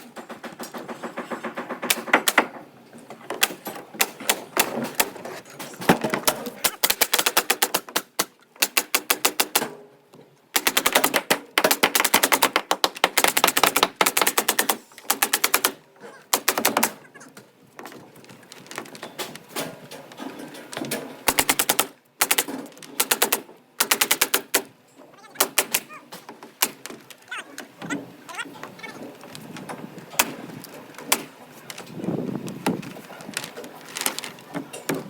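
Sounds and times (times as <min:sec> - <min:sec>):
nail gun firing in bursts: 0:00.0 - 0:09.9, 0:10.5 - 0:17.0, 0:20.7 - 0:27.2, 0:30.1 - 0:31.9.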